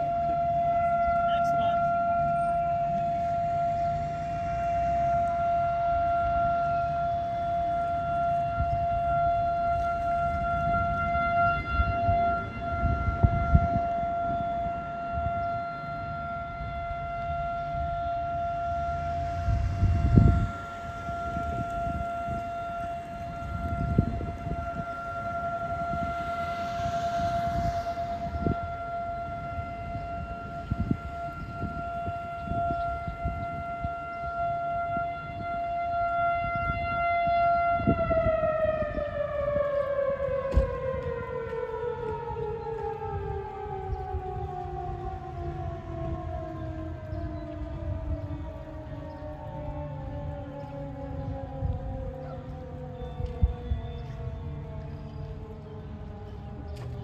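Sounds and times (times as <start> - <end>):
warning siren steady tone: 0.0 - 57.0
low rumble: 17.6 - 33.4.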